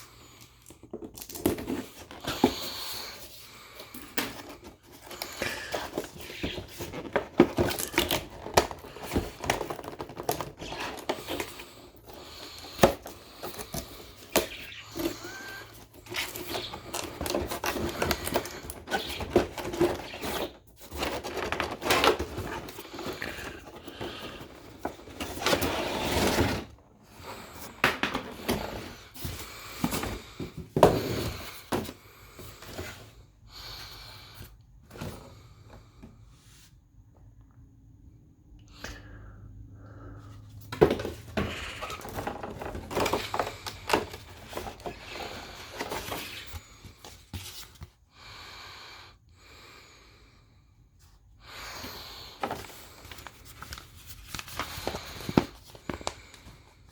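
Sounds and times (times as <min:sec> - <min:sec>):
packaging scraping and rustling: 0:00.8 - 0:33.1, 0:40.7 - 0:47.8, 0:52.3 - 0:56.6.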